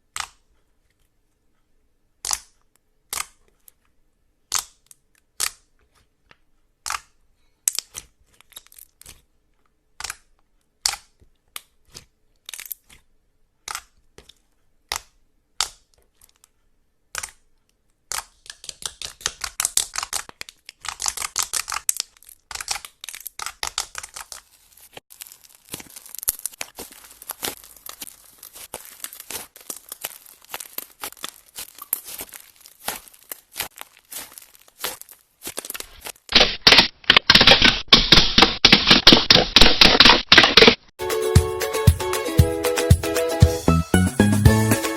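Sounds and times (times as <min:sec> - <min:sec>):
slime popping and crackling: 0:18.1 - 0:40.9.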